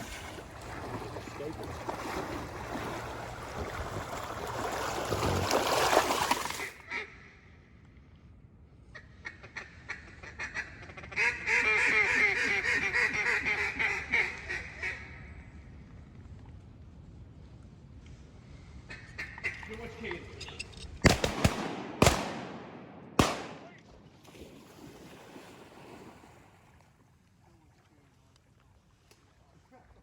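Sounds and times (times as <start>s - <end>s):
duck quacking rapidly: 9.3s - 15.0s.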